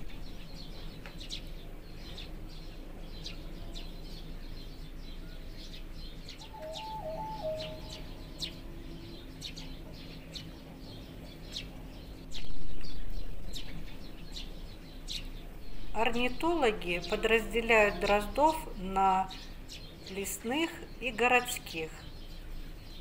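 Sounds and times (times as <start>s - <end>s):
low background hum: 0.0s - 23.0s
thrushes chirping: 5.6s - 23.0s.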